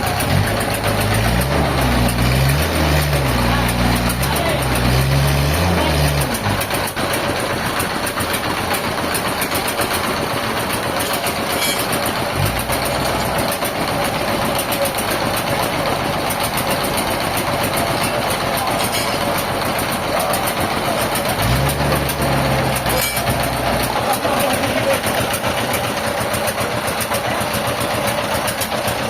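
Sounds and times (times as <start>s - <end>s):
steady mechanical noise: 0.0s - 29.0s
vehicle engine running: 0.0s - 29.0s
deep engine note: 11.6s - 27.5s.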